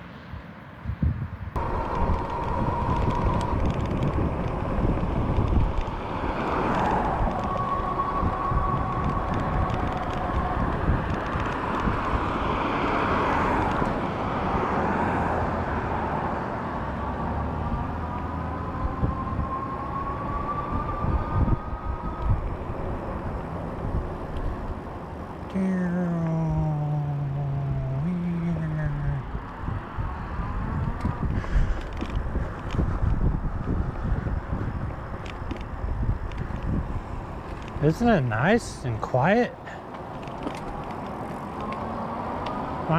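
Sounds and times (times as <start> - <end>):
low hum: 0.0 - 14.2
wind buffeting microphone: 0.0 - 42.9.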